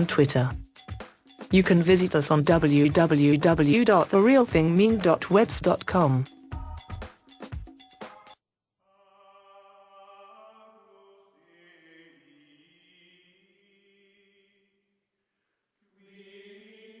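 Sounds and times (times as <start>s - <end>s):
faint choir-like music: 8.9s - 14.3s, 16.0s - 17.0s.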